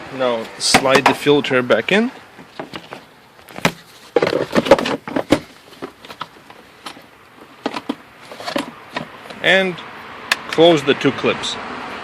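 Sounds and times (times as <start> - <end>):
plastic rubbing: 2.4 - 9.4.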